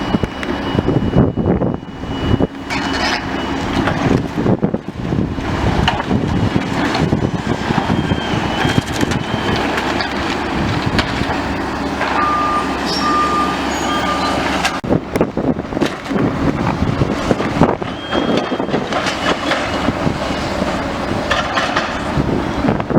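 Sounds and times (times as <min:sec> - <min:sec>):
reversing alarm beeps: 0:00.0 - 0:04.8, 0:07.0 - 0:14.9, 0:17.6 - 0:22.7
excavator engine running: 0:00.0 - 0:22.9
rubble and metal crunching: 0:00.0 - 0:22.9.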